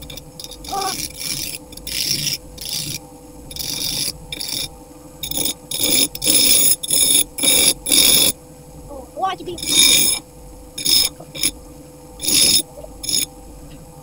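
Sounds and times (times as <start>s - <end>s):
wood being rasped by hand: 0.0s - 8.3s, 9.6s - 10.2s, 12.2s - 13.3s.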